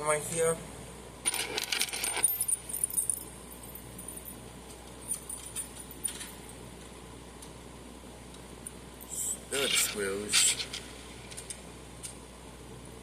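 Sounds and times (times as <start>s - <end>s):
metal hardware jingling: 1.3s - 4.4s, 5.0s - 6.5s.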